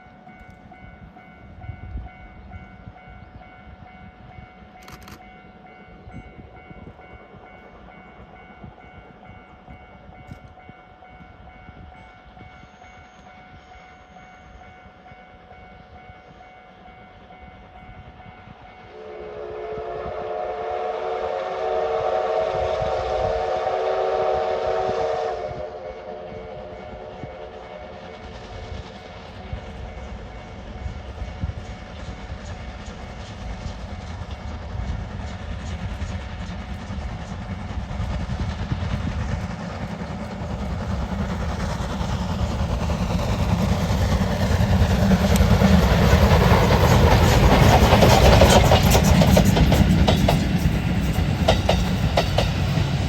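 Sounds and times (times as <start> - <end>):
steam locomotive whistle: 18.8 - 28.2.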